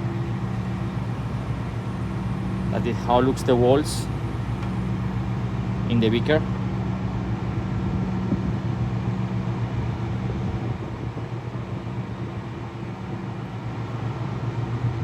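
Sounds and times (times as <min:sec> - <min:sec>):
industrial machinery humming: 0:00.0 - 0:15.0.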